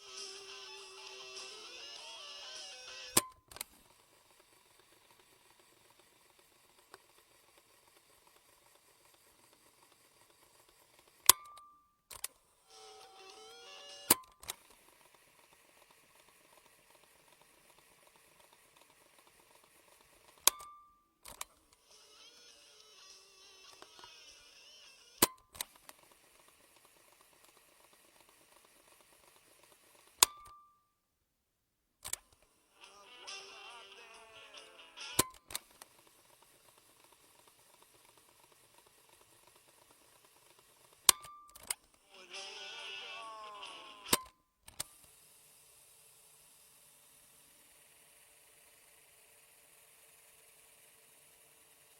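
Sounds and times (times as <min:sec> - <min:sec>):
sharp click: 0:20.4 - 0:21.5.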